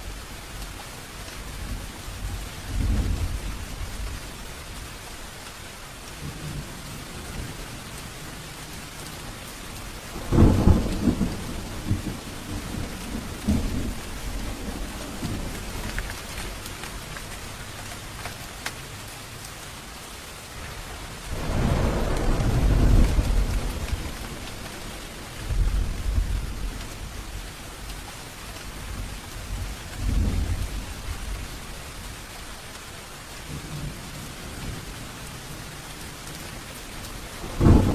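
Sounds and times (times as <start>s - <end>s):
steady rain falling: 0.0s - 37.9s
thunder rumbling: 6.1s - 18.2s, 20.6s - 32.4s, 37.2s - 37.9s.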